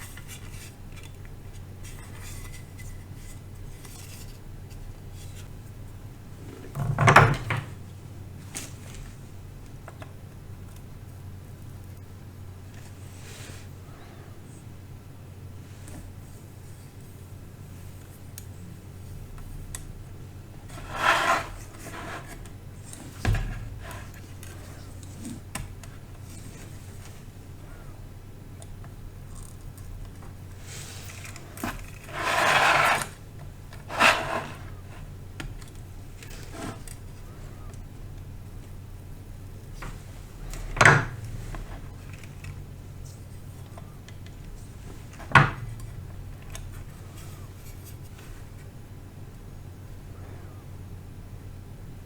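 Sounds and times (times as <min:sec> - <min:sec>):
scraping rub on workbench: 0:20.7 - 0:22.4, 0:30.6 - 0:33.2, 0:33.8 - 0:35.0.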